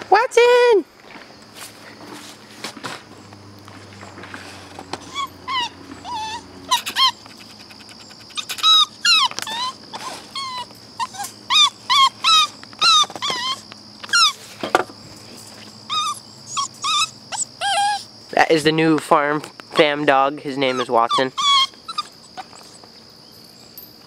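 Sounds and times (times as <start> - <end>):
dog yipping and whining: 5.0 - 14.5, 15.9 - 18.1, 19.8 - 22.9.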